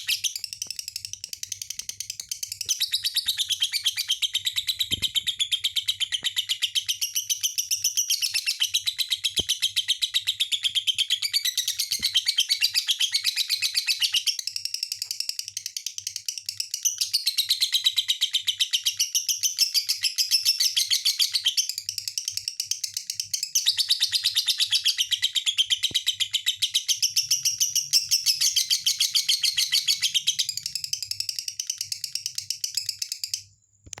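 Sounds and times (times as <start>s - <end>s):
lovebird chirping: 0.0s - 34.0s.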